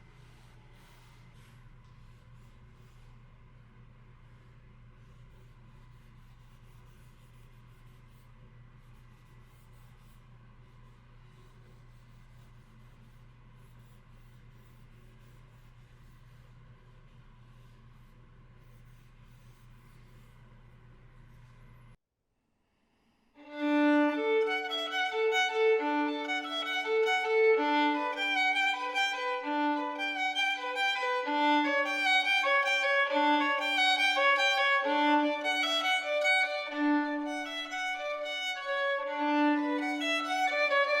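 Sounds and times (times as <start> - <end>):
violin music: 23.4 - 41.0.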